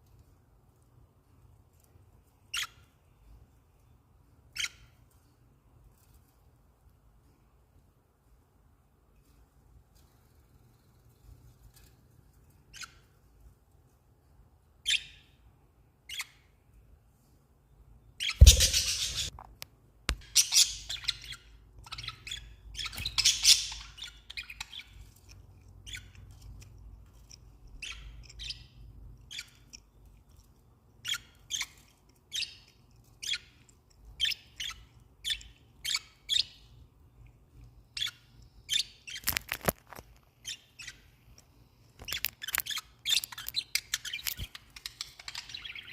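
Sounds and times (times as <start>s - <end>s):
budgerigars chirping: 18.2s - 19.3s, 20.3s - 24.9s
loud thump: 18.4s - 19.3s.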